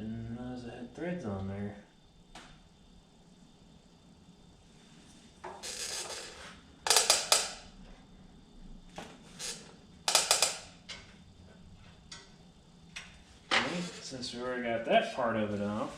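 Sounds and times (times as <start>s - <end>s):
scraping rustle: 13.5s - 14.4s.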